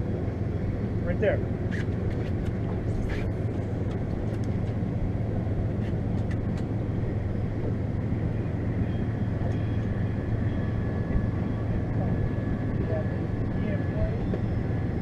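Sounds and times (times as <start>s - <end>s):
boat motor humming: 0.0s - 15.0s.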